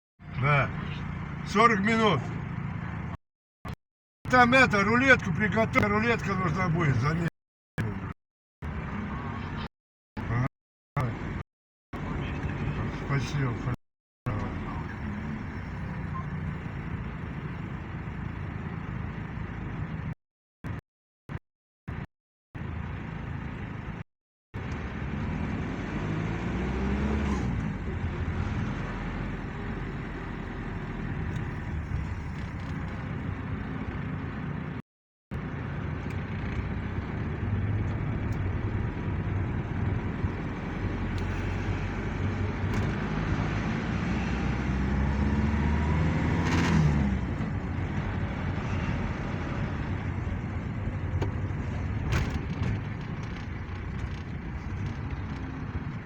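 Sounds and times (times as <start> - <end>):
road noise: 0.2 - 56.0
car engine accelerating: 24.6 - 34.7, 35.3 - 56.0.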